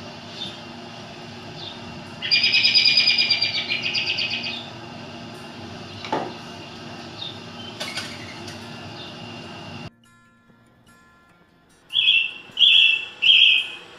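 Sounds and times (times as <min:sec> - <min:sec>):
songbird rapid trill: 0:01.5 - 0:04.8, 0:11.9 - 0:13.9
soft high bird calls: 0:01.6 - 0:04.7, 0:11.9 - 0:13.9
sharp bird chirp: 0:11.9 - 0:13.8.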